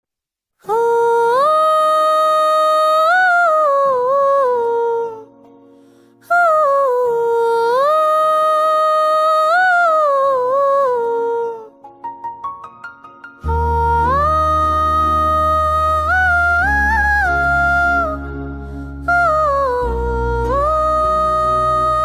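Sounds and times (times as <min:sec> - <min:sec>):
person humming a melody: 0:00.6 - 0:05.3, 0:13.4 - 0:22.0.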